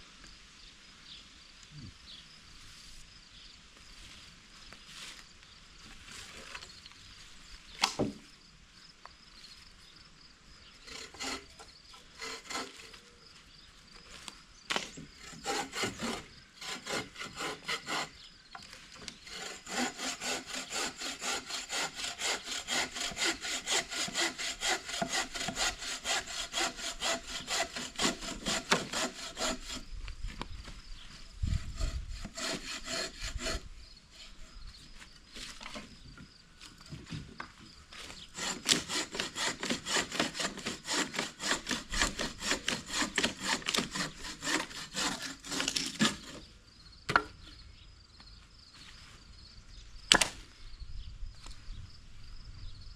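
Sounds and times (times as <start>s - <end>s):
hand saw cutting wood: 10.8s - 13.0s, 14.7s - 18.3s, 19.0s - 29.9s, 31.4s - 34.5s, 38.1s - 46.5s.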